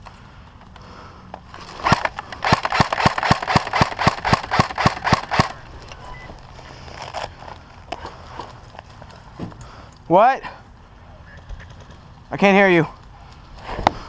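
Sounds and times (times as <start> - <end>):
airsoft rifle rapid shots: 1.8 - 5.6.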